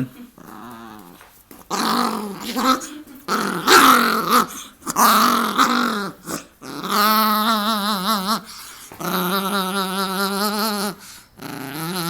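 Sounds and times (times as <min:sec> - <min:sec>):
dog growling: 0:00.0 - 0:12.0.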